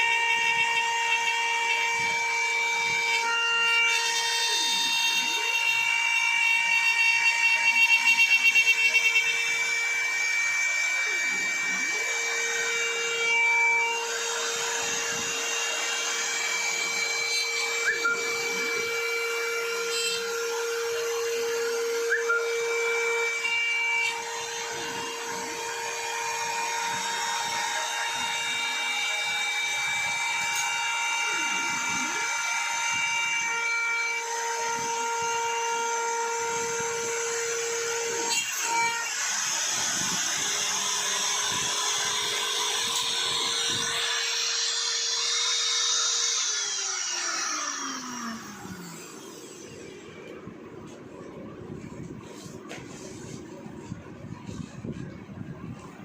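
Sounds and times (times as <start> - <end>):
bit cutting acrylic sheet: 0.0 - 56.0
router spindle whining: 0.0 - 56.0.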